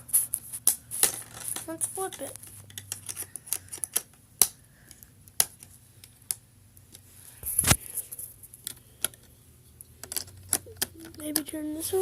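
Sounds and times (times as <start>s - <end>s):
plastic parts snapping: 2.7s - 5.7s, 8.6s - 9.3s, 10.0s - 11.2s.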